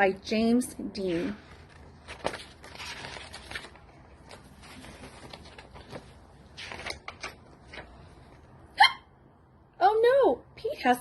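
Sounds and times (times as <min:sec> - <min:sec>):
book pages rustling: 0:01.0 - 0:08.6.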